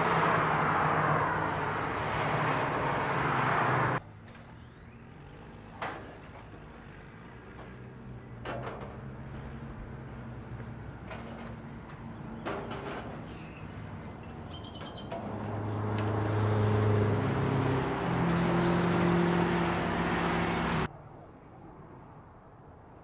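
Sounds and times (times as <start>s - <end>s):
car engine accelerating hard: 0.0s - 4.0s, 15.3s - 20.9s.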